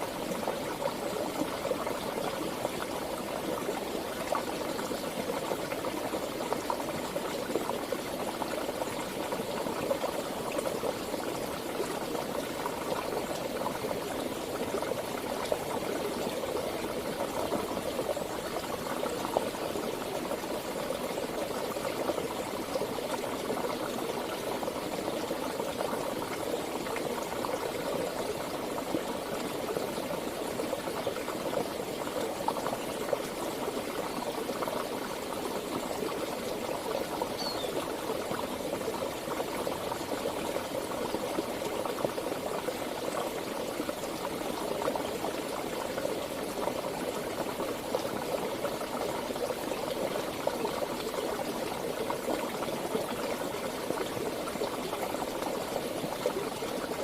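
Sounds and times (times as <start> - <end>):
small water splashes: 0.0 - 57.0
stream water flowing: 0.0 - 57.0.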